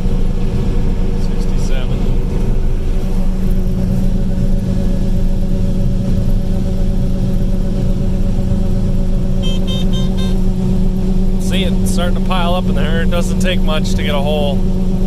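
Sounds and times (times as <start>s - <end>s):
combine harvester engine drone: 0.0s - 15.0s
short electronic beeps: 9.4s - 10.4s.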